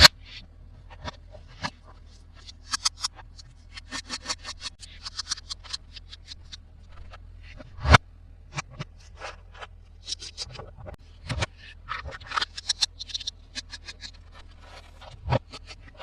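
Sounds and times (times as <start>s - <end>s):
plastic toys clicking and scratching: 2.4s - 7.1s, 11.2s - 16.0s.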